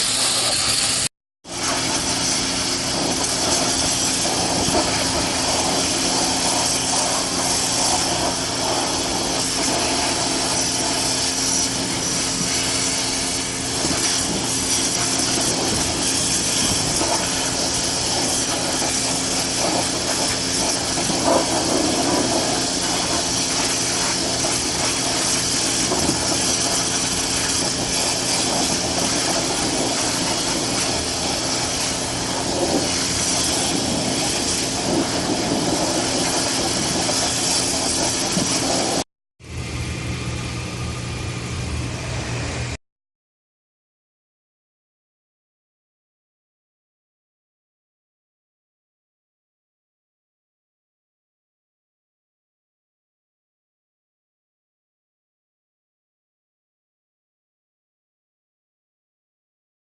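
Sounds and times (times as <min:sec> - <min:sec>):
machine humming and hissing: 0:00.0 - 0:42.8.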